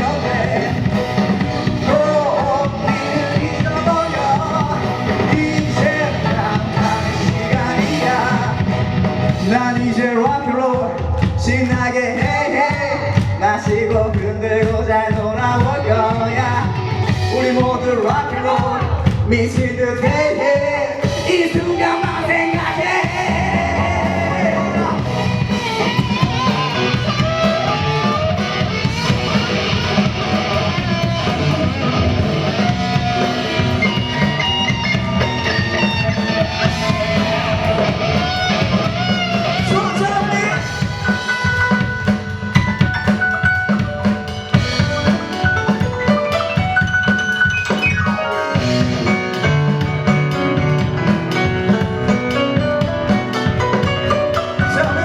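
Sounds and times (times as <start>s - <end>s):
drum kit beat: 0.0s - 55.0s
live rock band playing: 0.0s - 55.0s
guitar lines: 21.0s - 55.0s.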